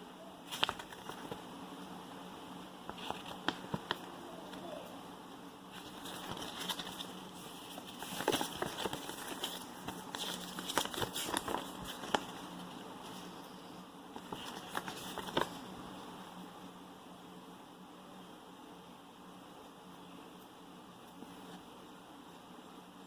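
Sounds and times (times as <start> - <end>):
faint steady hum: 0.0 - 23.0
packaging rustling: 5.7 - 13.2, 14.2 - 15.7.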